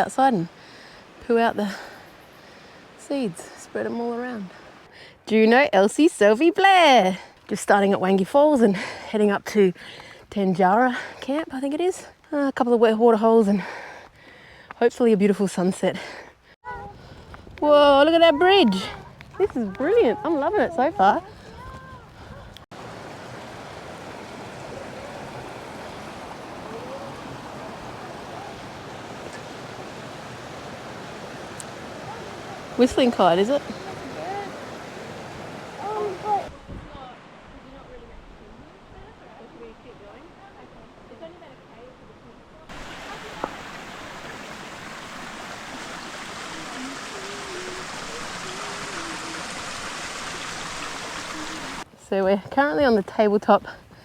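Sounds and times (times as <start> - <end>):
flowing water rushing: 0.0 - 7.5, 17.6 - 51.9
faint wavering voices: 35.6 - 36.5, 46.4 - 49.8.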